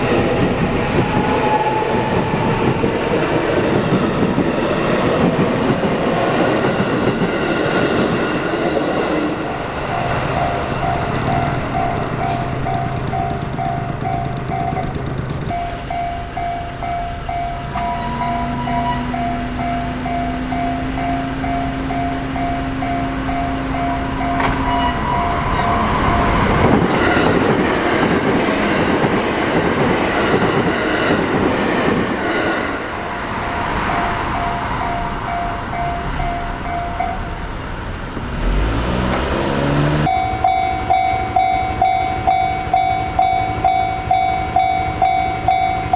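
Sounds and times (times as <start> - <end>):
train wheels rumbling over rails: 0.0 - 45.9
rising whine: 7.4 - 28.3
level-crossing bell ringing: 7.7 - 28.0, 33.1 - 37.8, 40.0 - 45.9.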